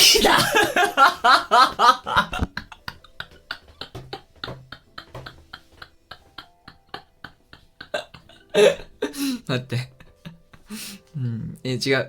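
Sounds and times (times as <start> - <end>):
man sneezing: 0.0 - 0.7.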